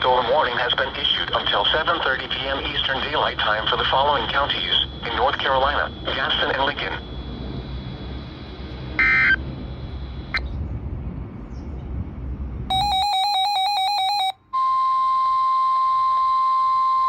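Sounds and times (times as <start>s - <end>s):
radio static: 0.0s - 10.4s
warbling digital data tones: 0.8s - 10.5s, 12.7s - 17.0s
steady alarm tone: 2.8s - 10.5s, 12.7s - 17.0s
short beep: 12.7s - 17.0s.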